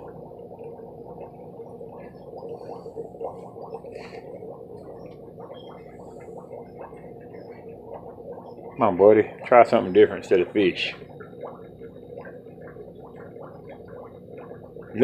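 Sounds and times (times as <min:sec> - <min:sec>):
water gurgling and bubbling: 0:00.0 - 0:15.0.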